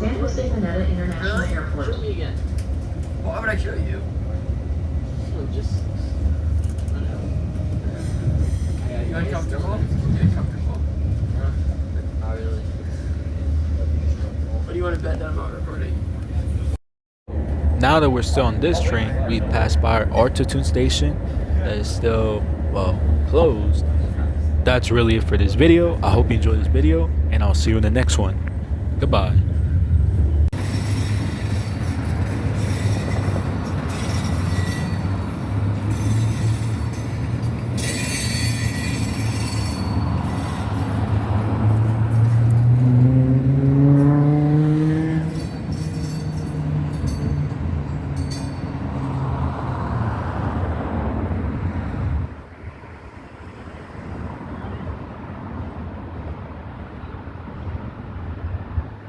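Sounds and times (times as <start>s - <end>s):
train rumbling: 0.0s - 16.7s, 17.3s - 52.9s
wind buffeting microphone: 7.3s - 14.4s, 28.4s - 35.8s
high-pitched wheel squeal: 8.0s - 9.1s, 30.6s - 41.0s.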